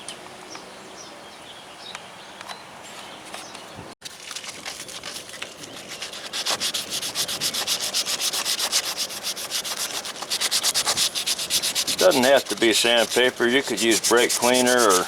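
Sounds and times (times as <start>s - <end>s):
sandpaper rubbing by hand: 4.7s - 15.0s.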